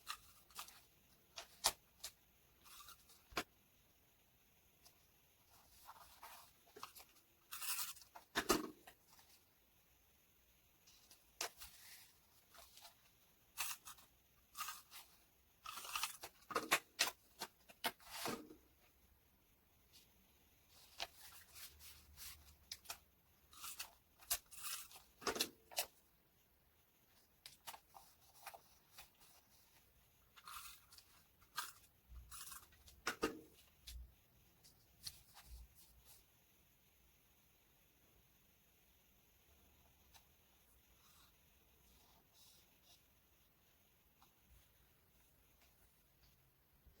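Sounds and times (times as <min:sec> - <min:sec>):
paper rustling: 0:10.9 - 0:18.6.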